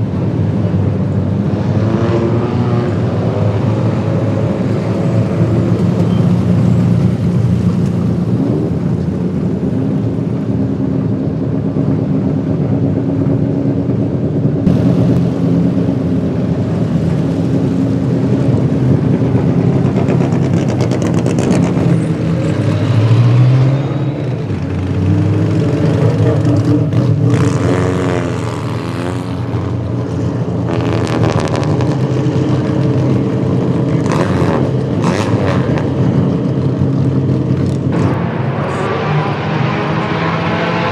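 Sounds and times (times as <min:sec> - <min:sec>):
race car engines idling: 0:03.0 - 0:23.1, 0:29.4 - 0:39.3.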